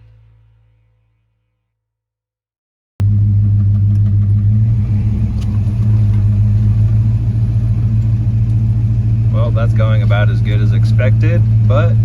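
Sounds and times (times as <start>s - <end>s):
vehicle engine running low: 3.0s - 12.0s.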